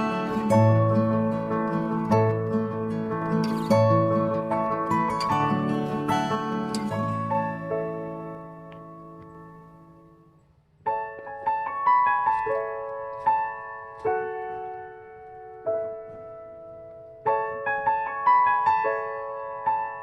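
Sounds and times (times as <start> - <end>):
soft piano melody: 0.0 - 20.0.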